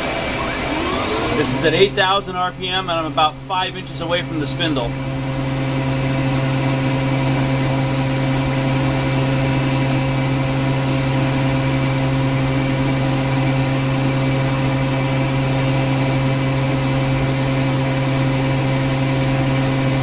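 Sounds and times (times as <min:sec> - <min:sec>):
lathe spindle humming: 0:00.0 - 0:13.9.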